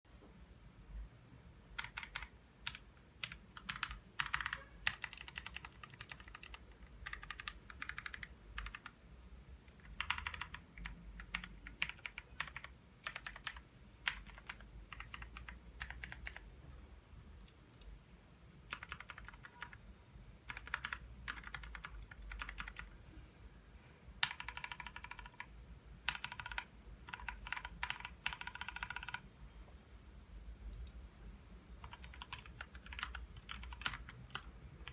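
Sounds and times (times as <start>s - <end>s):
mechanical keyboard typing: 1.7s - 9.0s, 9.6s - 16.5s, 18.7s - 19.8s, 20.4s - 22.9s, 24.2s - 29.2s, 31.8s - 34.9s.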